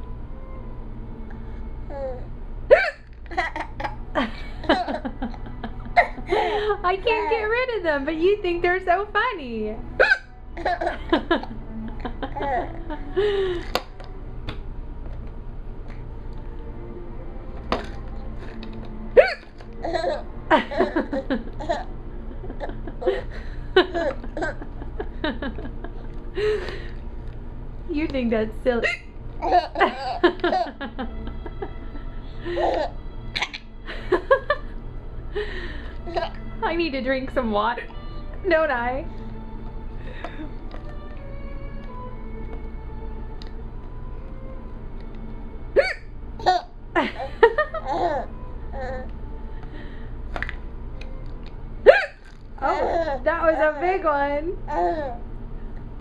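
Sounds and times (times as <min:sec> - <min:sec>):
steady background hum: 0:00.0 - 0:56.0
baby laughing: 0:01.9 - 0:07.5, 0:10.0 - 0:13.1, 0:19.2 - 0:24.8, 0:28.8 - 0:30.8, 0:32.4 - 0:33.7, 0:45.8 - 0:49.1, 0:51.9 - 0:53.3, 0:54.7 - 0:55.2
woman hiccuping: 0:10.0 - 0:10.3, 0:19.2 - 0:19.5, 0:45.8 - 0:46.1, 0:51.9 - 0:53.0.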